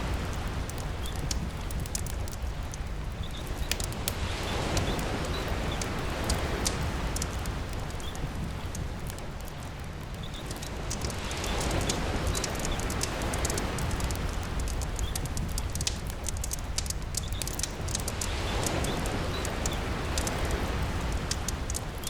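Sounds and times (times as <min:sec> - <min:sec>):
campfire crackling: 0:00.0 - 0:22.0
rain hissing: 0:00.0 - 0:22.0
sea surf: 0:10.6 - 0:14.8, 0:18.0 - 0:21.9.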